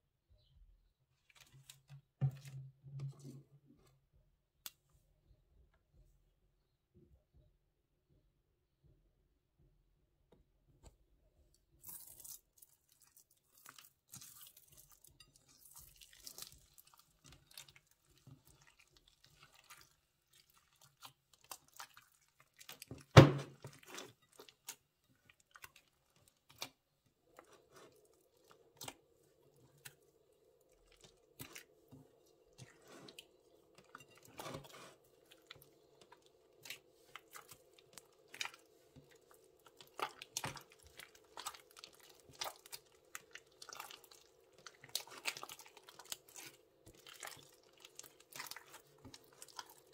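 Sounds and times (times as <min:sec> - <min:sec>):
slime squishing wet crackles: 0:11.8 - 0:49.9.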